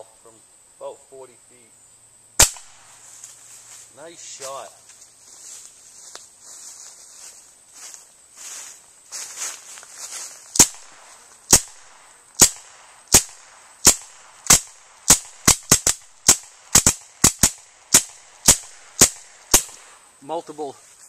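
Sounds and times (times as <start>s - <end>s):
air guns firing at steel trap: 2.4s - 2.8s, 11.5s - 20.0s.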